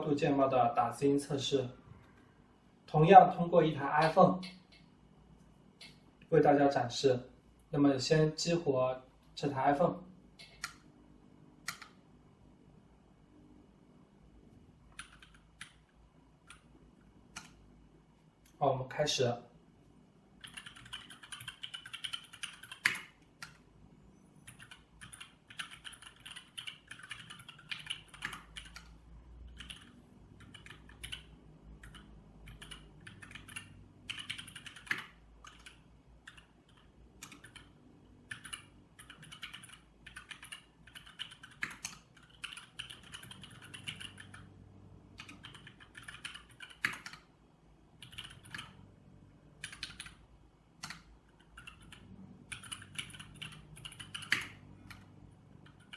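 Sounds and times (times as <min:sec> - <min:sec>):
mechanical keyboard typing: 0:14.9 - 0:15.8, 0:20.4 - 0:23.6, 0:24.4 - 0:44.5, 0:45.2 - 0:47.3, 0:48.0 - 0:48.8, 0:49.6 - 0:50.2, 0:50.8 - 0:55.9.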